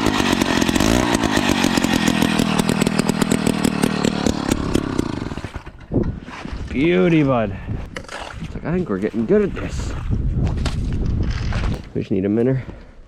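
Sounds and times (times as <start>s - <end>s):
ice auger motor drilling: 0.0s - 6.5s.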